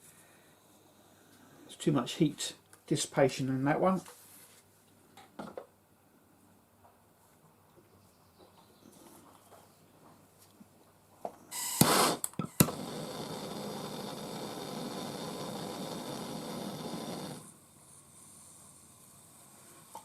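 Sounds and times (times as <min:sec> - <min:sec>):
gas burst: 0:11.5 - 0:18.8
torch flame hissing: 0:11.6 - 0:20.0
torch igniter clicks: 0:11.7 - 0:12.9.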